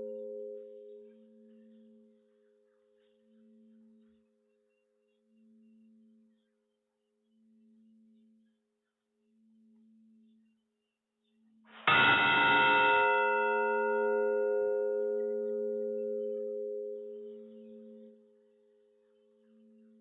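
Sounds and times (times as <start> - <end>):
bell ringing: 11.9 - 14.8.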